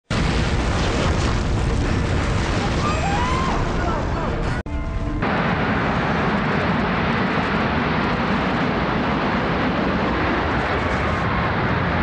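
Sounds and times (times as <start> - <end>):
roar of building collapsing: 0.1 - 4.4.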